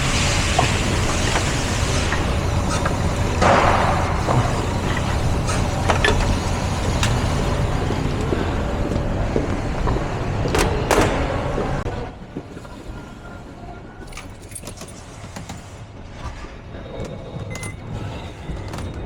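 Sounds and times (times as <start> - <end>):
vehicle engine rumbling: 0.0 - 14.6.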